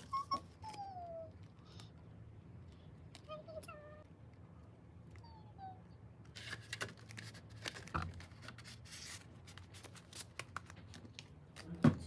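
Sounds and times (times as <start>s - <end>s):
plastic and paper crinkling: 6.4s - 11.8s.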